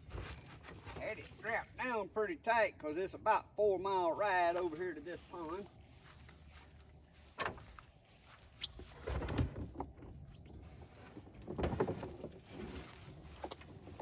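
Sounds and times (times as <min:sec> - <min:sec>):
plastic kayak knocking and scraping: 0:08.8 - 0:14.0.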